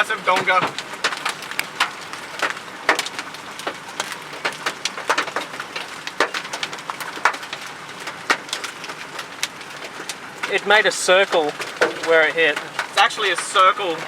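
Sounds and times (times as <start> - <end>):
large hailstones knocking on car: 0.0 - 14.0
rattle of small hail: 0.0 - 14.0.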